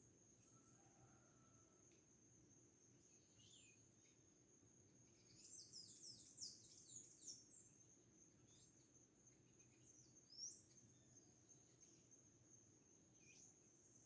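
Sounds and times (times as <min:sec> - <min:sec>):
small birds chirping: 0:05.1 - 0:12.2.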